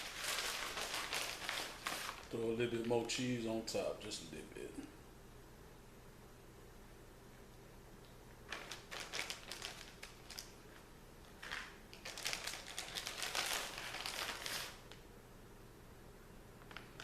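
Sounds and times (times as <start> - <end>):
plastic packaging crinkling: 0.0 - 3.0, 8.5 - 10.6, 11.2 - 15.0.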